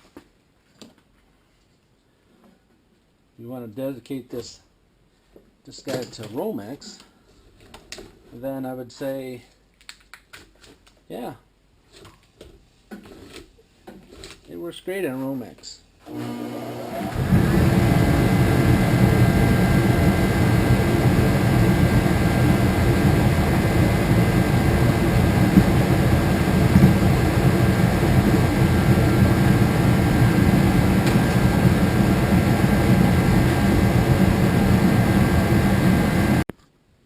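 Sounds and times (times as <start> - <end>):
loud mechanical roar: 16.1 - 36.4.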